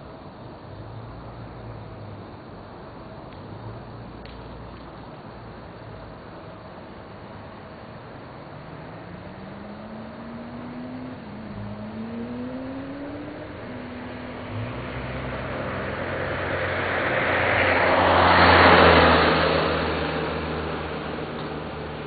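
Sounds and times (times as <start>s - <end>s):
car driving past: 8.3s - 22.0s.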